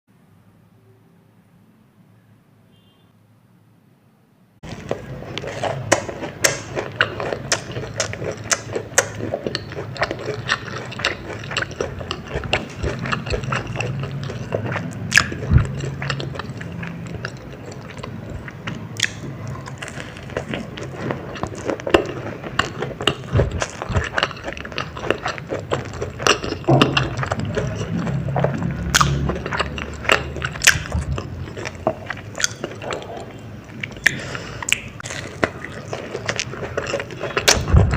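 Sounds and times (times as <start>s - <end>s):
person chewing and crunching: 4.6s - 37.9s
wet mouth clicks: 32.4s - 35.8s.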